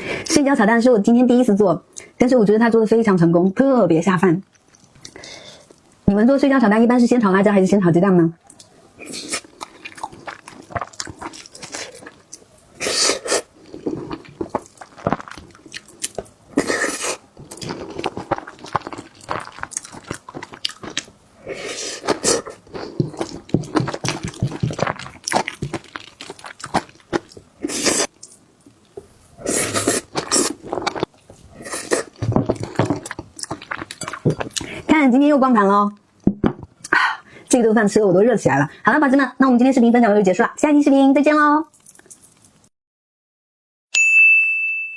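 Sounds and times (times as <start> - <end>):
food crunching: 8.5 - 34.8
person chewing food: 8.5 - 34.9.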